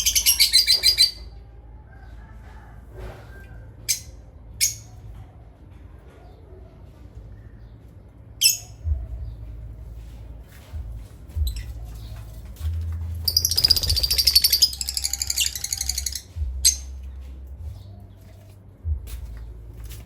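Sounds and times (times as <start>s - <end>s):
parrot chirping and trilling: 0.0s - 1.3s, 3.9s - 5.0s, 8.4s - 8.9s, 13.2s - 17.0s.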